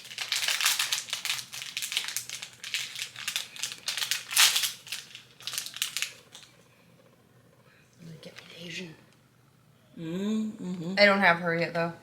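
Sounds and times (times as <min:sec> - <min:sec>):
plastic packaging crinkling: 0:00.0 - 0:06.6.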